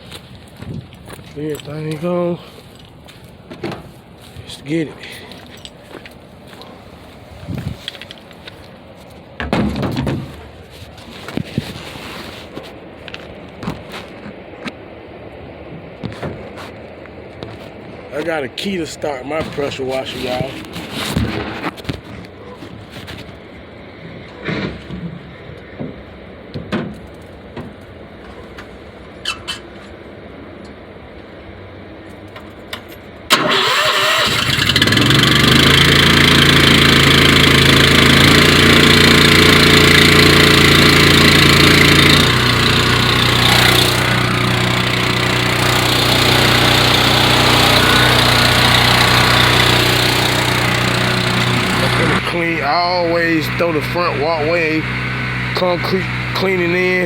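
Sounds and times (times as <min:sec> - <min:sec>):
pressure washer engine running: 0:33.4 - 0:57.0.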